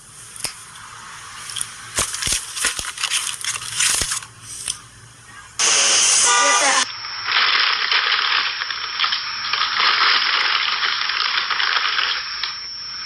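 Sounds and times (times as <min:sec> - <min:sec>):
crushing crackling sound effect: 0:00.2 - 0:04.8, 0:05.6 - 0:12.7
loud abrupt sound effect: 0:05.6 - 0:06.9.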